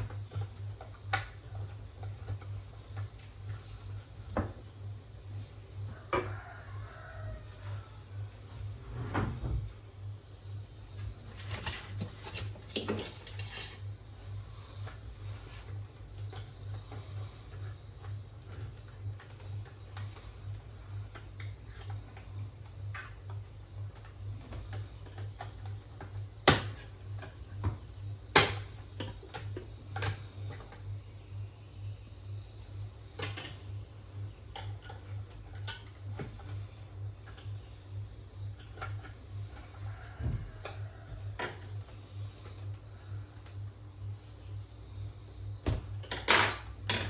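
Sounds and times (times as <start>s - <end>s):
pulsing low hum: 13.9s - 29.0s.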